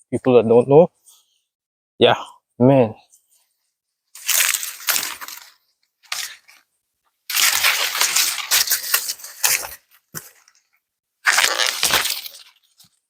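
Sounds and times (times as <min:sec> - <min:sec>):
dry husks crackling and rustling: 0:04.2 - 0:06.6, 0:07.3 - 0:13.0
corn ears snapped off stalks: 0:07.3 - 0:09.8, 0:11.3 - 0:12.6.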